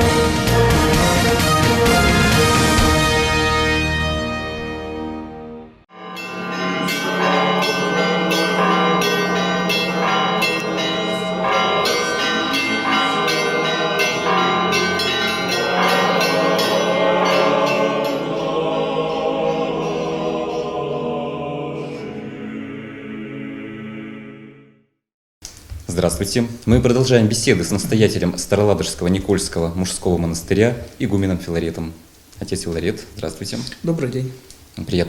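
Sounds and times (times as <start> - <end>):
sustained choral chord: 0.0 - 24.9
church bells ringing: 5.9 - 21.2.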